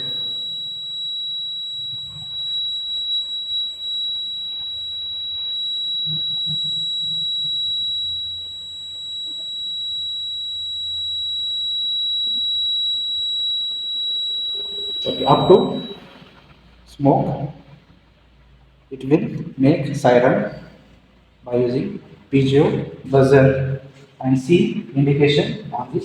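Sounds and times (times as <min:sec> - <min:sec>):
high-pitched piezo buzzer tone: 0:00.0 - 0:16.3.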